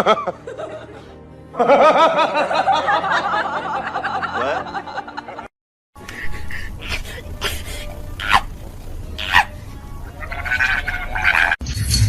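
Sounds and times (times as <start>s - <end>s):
background music: 0.0s - 12.0s
high-pitched laughter: 6.0s - 8.5s, 9.2s - 9.6s, 10.2s - 11.6s.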